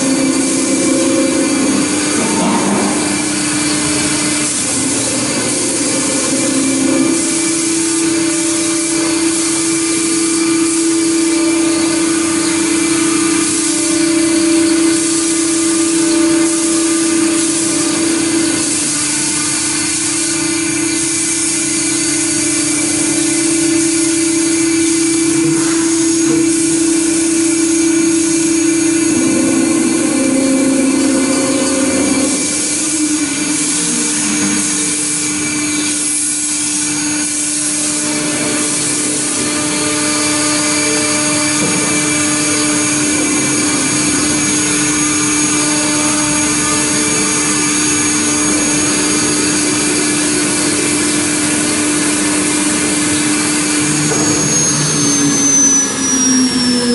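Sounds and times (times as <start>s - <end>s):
cutter milling metal hiss: 0.0s - 56.9s
router spindle whine: 0.0s - 56.9s.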